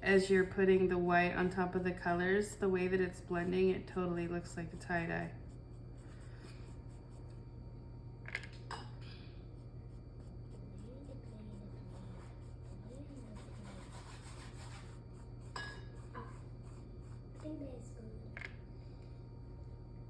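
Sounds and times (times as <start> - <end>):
low electrical hum: 0.0 - 20.0
paintbrush rubbing on canvas: 2.9 - 7.4, 9.5 - 17.6.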